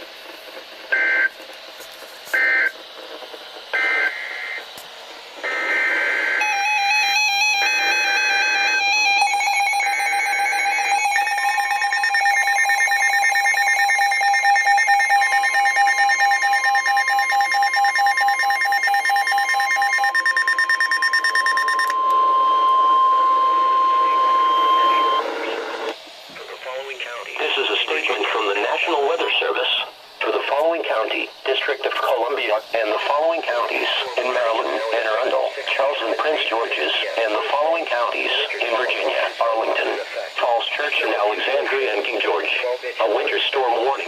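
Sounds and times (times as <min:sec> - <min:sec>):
steady warning alarm tone: 0:00.9 - 0:01.4, 0:02.3 - 0:02.8, 0:03.7 - 0:04.7, 0:05.4 - 0:26.0
digital data blips: 0:07.4 - 0:25.5.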